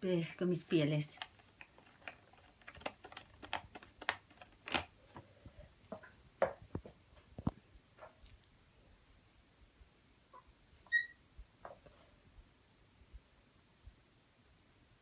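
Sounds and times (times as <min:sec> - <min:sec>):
plastic cases clicking and tapping: 0:01.1 - 0:05.3.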